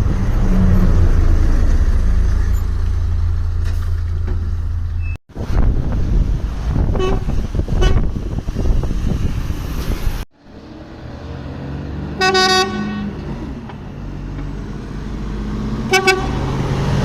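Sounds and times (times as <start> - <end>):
truck diesel engine rumbling: 0.0 - 17.0
truck horn toots: 6.9 - 8.1, 12.2 - 13.2, 15.9 - 16.6.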